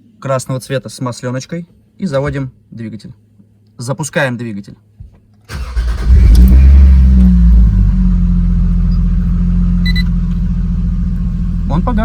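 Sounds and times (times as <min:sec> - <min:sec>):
car engine idling: 0:05.5 - 0:12.0.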